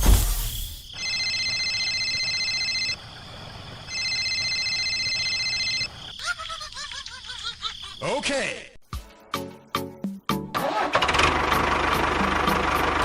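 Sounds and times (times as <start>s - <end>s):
telephone ringing: 0.9s - 3.0s, 3.9s - 6.0s.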